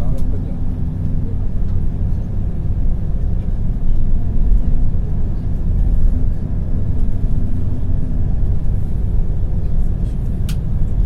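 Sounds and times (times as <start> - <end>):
faint steady drone: 0.0 - 11.0
vehicle rumble: 0.0 - 11.0.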